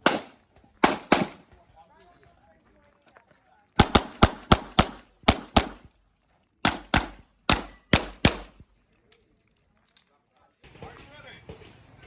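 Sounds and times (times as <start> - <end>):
handgun shots: 0.0 - 1.4, 3.8 - 5.9, 6.7 - 8.6.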